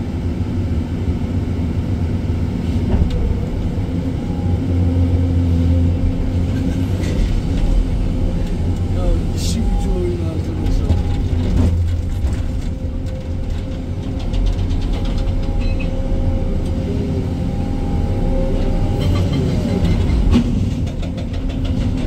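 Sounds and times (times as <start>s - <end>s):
diesel engine rumbling: 0.0s - 22.0s.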